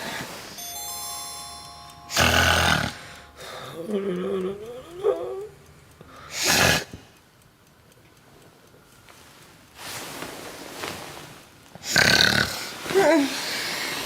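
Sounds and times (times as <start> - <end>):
person snoring: 11.9 - 12.7.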